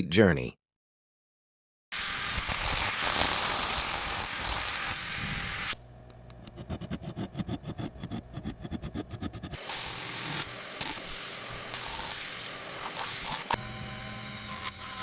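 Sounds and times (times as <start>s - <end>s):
dental air-water spray hiss: 2.0s - 5.8s, 9.6s - 13.6s
dental instrument scratching: 2.4s - 5.4s, 6.3s - 13.6s, 14.4s - 15.0s.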